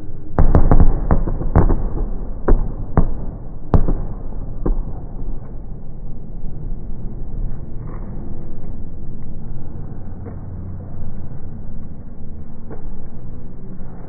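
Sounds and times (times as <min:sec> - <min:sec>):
fireworks bangs: 0:00.4 - 0:05.7.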